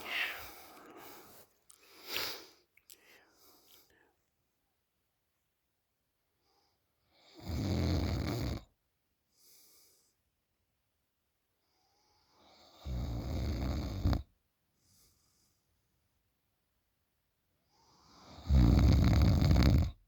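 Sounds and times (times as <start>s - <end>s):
soft breath: 0.0s - 4.2s
woman snoring loudly: 7.4s - 8.6s, 12.8s - 14.2s, 18.3s - 19.9s.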